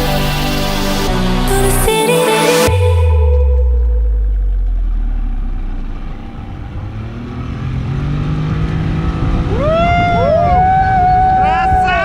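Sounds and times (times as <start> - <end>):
motorboat engine rumbling: 2.7 - 11.4.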